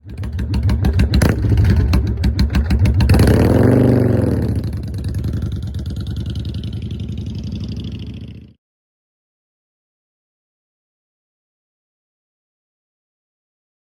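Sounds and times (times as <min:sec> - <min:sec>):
motorcycle engine revving and idling: 0:00.0 - 0:08.6.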